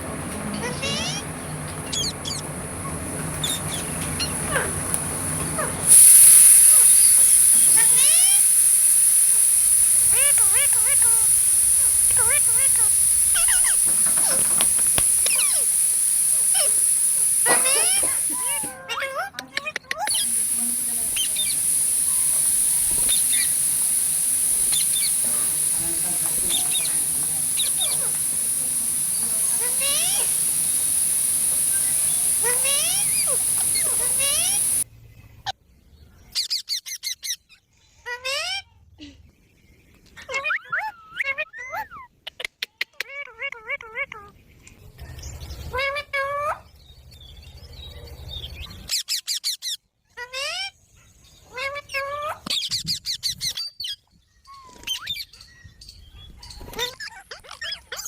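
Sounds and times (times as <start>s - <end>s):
steady high hiss: 3.7s - 18.8s, 20.1s - 34.9s
parrot chirping: 5.8s - 18.8s, 20.1s - 34.9s.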